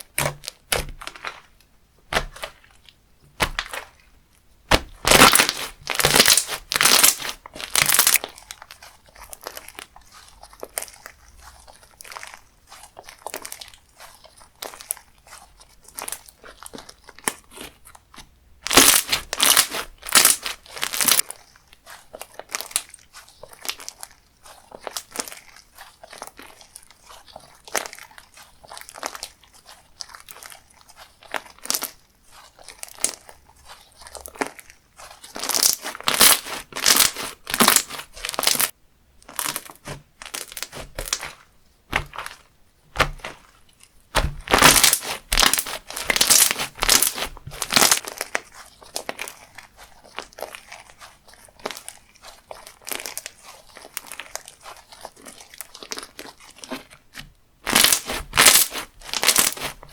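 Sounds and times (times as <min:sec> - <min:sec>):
slime crackling and crunching: 0:00.0 - 0:59.9.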